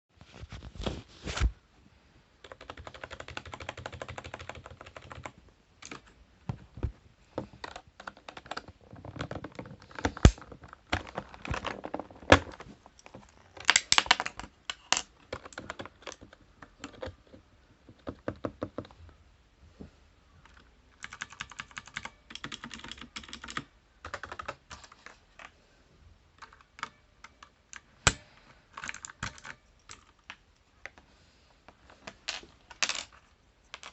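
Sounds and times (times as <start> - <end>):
computer keyboard typing: 2.4 - 6.1, 7.4 - 11.6, 13.7 - 19.0, 20.4 - 25.5, 26.4 - 30.4.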